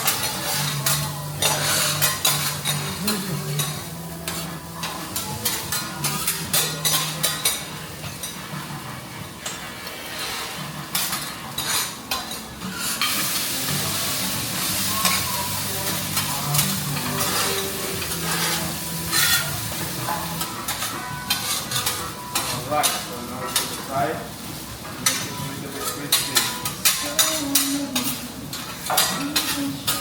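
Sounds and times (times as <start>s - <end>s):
metal spatulas clacking and scraping: 0.0s - 8.4s, 10.9s - 13.2s, 16.0s - 23.8s, 25.0s - 30.0s
vegetables sizzling on a griddle: 0.0s - 30.0s.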